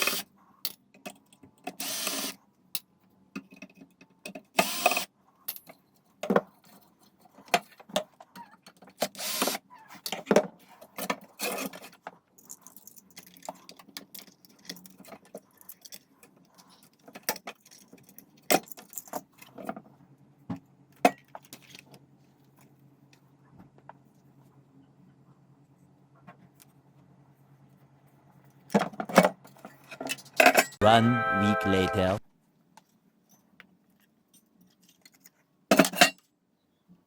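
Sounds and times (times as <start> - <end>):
small parts and tools clicking: 11.0 - 19.6.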